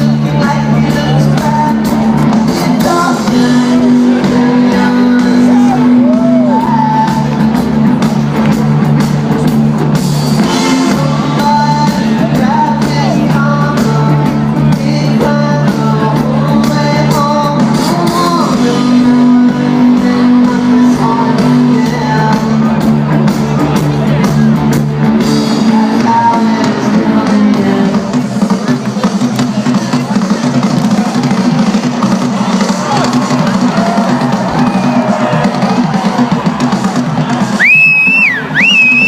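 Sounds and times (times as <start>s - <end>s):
person singing: 0.0s - 8.0s, 10.4s - 24.3s, 25.2s - 28.8s
live rock band playing: 0.0s - 39.0s.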